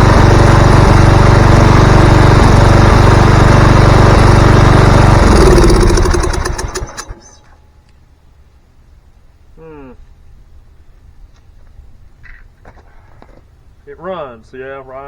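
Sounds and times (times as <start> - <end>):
lawn mower engine running: 0.0 - 7.6
engine pops: 5.2 - 7.4.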